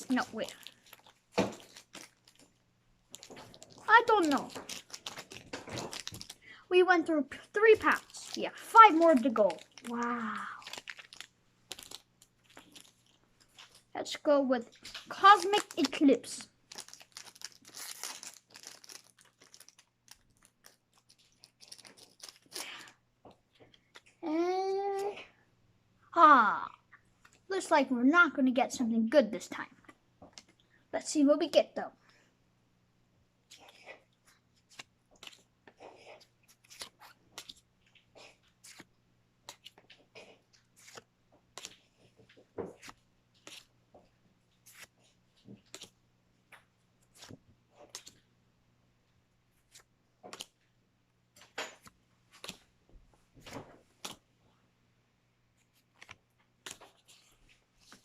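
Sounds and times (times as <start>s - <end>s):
foil wrapper crinkling: 0.0s - 6.6s, 7.3s - 13.9s, 14.7s - 22.9s.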